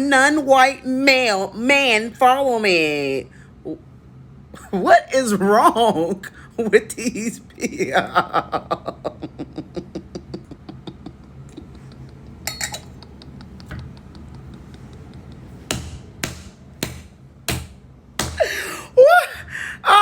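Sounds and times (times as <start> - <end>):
man laughing: 7.6 - 12.4, 13.0 - 15.6
sharp knocks: 15.6 - 18.4.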